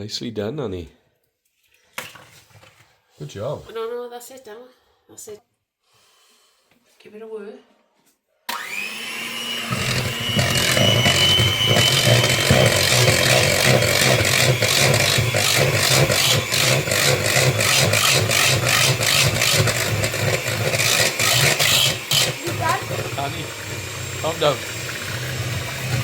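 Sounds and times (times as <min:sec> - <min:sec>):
electric mixer whining: 0:08.5 - 0:26.0.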